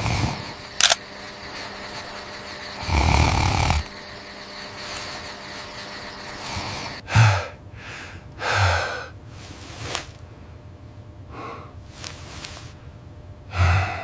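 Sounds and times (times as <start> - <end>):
breathy huffs and gasps: 7.0 - 9.6, 13.5 - 14.0.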